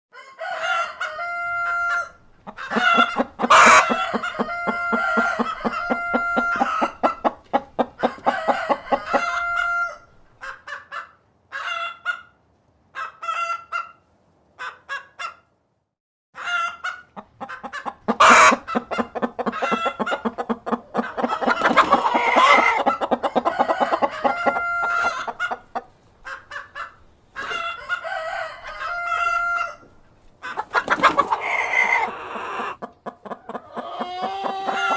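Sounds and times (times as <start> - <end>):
rooster crowing: 0.1 - 6.9, 8.0 - 10.0, 21.2 - 25.3, 27.7 - 29.9, 33.7 - 34.9
hens clucking: 0.6 - 12.3, 16.4 - 34.9.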